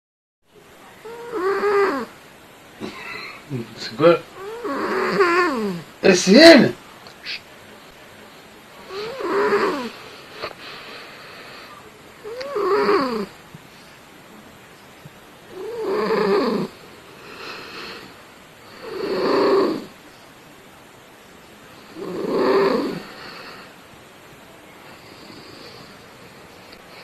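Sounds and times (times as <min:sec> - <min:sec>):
cat snoring: 0:01.0 - 0:02.1, 0:04.4 - 0:05.9, 0:08.9 - 0:13.3, 0:15.5 - 0:19.9, 0:21.8 - 0:23.7, 0:24.9 - 0:26.4.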